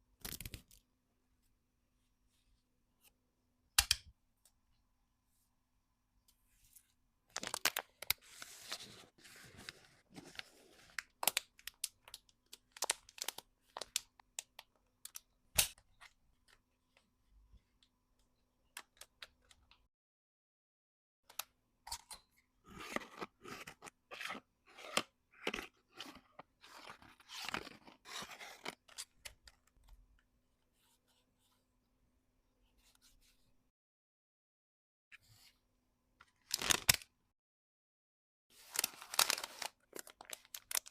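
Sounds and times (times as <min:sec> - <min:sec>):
plastic and paper crinkling: 0:07.3 - 0:15.2, 0:36.4 - 0:37.0, 0:38.6 - 0:40.9
packaging tearing: 0:38.7 - 0:40.9.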